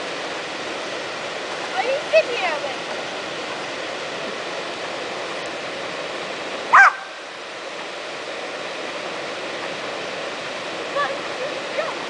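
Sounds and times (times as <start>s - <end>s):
waterfall rushing: 0.0s - 12.0s
dog barking: 6.7s - 7.1s.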